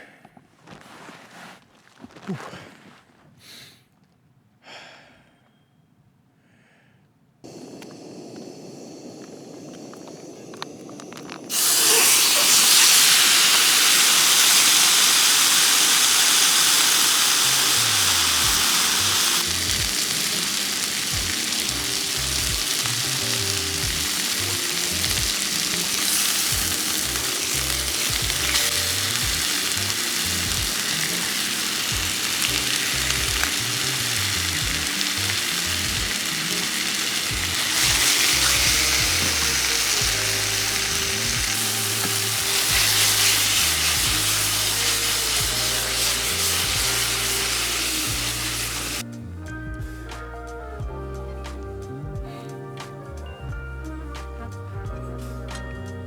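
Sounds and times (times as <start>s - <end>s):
food sizzling in a pan: 7.5s - 49.1s
music with low bass line: 17.8s - 20.4s, 21.1s - 36.6s, 37.3s - 56.0s.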